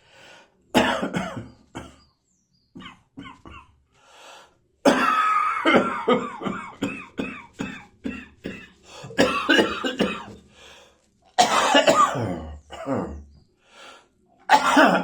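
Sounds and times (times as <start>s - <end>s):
person coughing: 0.8s - 2.0s, 4.9s - 10.4s, 11.4s - 13.2s, 14.5s - 15.0s.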